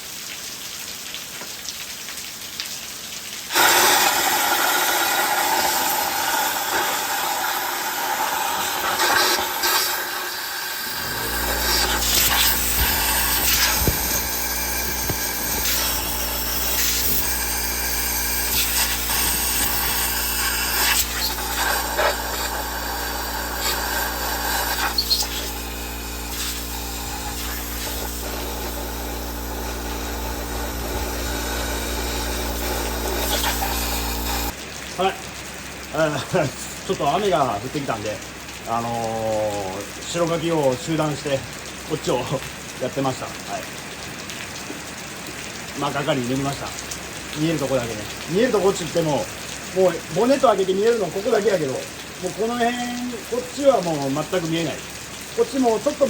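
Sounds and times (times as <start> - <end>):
rain hiss: 0.0 - 56.0
power tool running scratchy: 3.5 - 34.6
low motor hum: 10.8 - 34.6.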